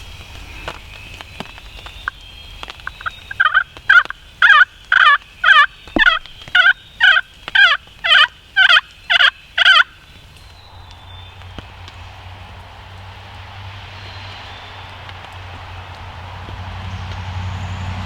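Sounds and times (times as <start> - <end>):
turkey yelps: 2.8 - 10.1.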